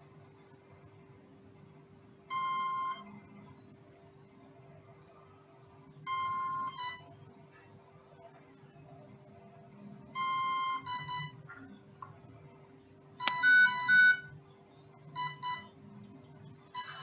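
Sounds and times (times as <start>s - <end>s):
faint steady hum: 0.0s - 17.0s
electronic beep tones: 2.3s - 4.0s, 10.1s - 11.5s, 13.2s - 17.0s.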